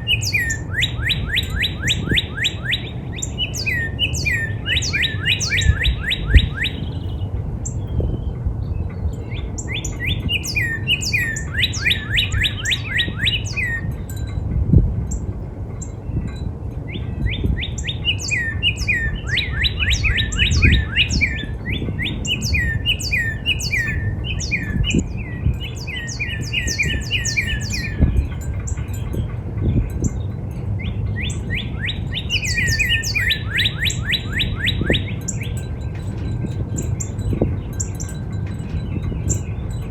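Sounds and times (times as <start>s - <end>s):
bird singing whistles: 0.0s - 8.3s, 9.2s - 14.2s, 16.9s - 29.0s, 30.8s - 35.6s.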